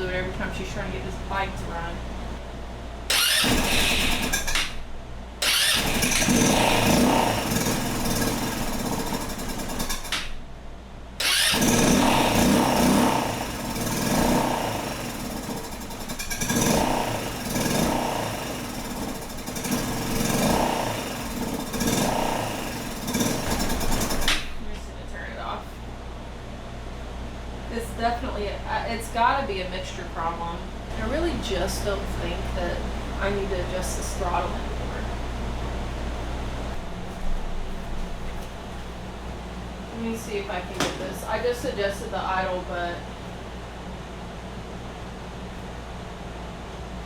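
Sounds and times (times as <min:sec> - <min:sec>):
scooter engine running roughly: 0:03.1 - 0:10.5, 0:11.2 - 0:24.7.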